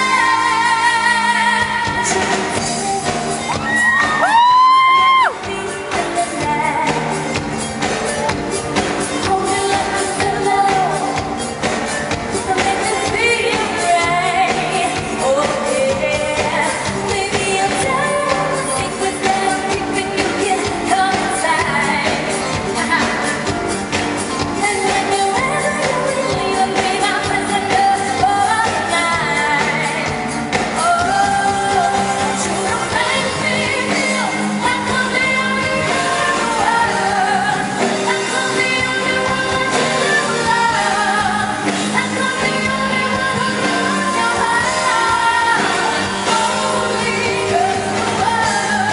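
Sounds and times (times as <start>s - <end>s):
full band playing pop music: 0.0s - 48.9s
woman singing: 0.0s - 48.9s.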